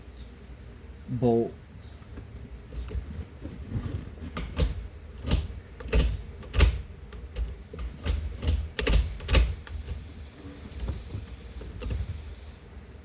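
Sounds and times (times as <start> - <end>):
tool clicks and metallic knocks: 4.3 - 9.9.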